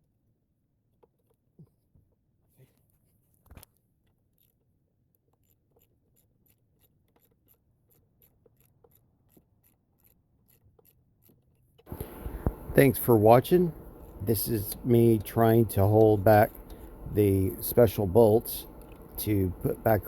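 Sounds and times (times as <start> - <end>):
ratchet ticking: 5.3 - 20.0.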